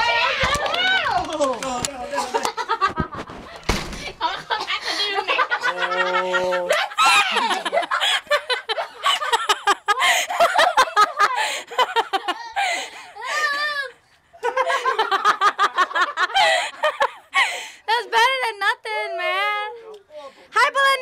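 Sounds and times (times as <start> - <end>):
hearty laughter: 2.1 - 13.4, 14.3 - 17.5.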